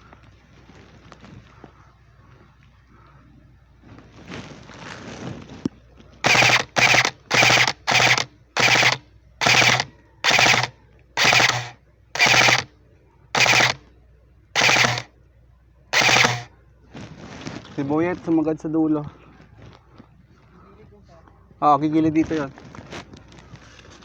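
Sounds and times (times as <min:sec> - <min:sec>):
airsoft gun full-auto bursts: 0:06.2 - 0:12.7, 0:13.4 - 0:13.8, 0:14.6 - 0:15.1, 0:16.0 - 0:16.5.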